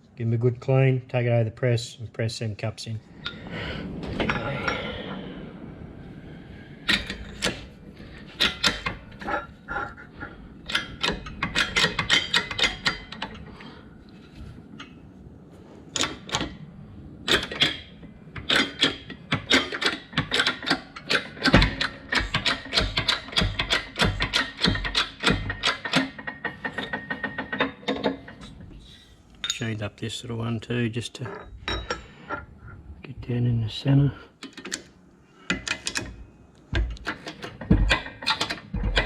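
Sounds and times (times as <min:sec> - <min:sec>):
metal parts and tools clinking: 0:06.9 - 0:13.5, 0:17.3 - 0:29.8, 0:31.2 - 0:32.5, 0:35.5 - 0:39.0.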